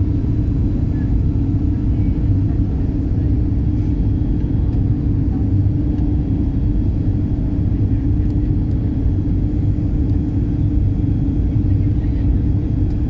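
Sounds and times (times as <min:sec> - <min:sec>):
airliner cabin engine rumble: 0:00.0 - 0:13.0.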